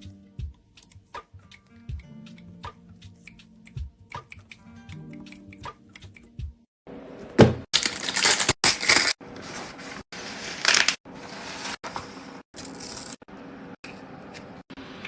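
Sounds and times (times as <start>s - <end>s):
crinkling crunching noises: 7.8s - 11.0s.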